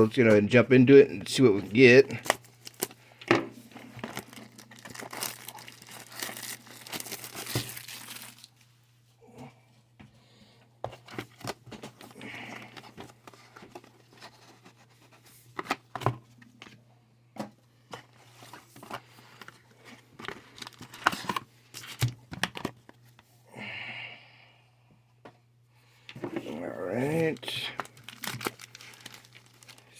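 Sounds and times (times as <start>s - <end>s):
packaging tearing and crinkling: 2.1s - 3.0s, 4.0s - 8.6s, 27.2s - 29.9s.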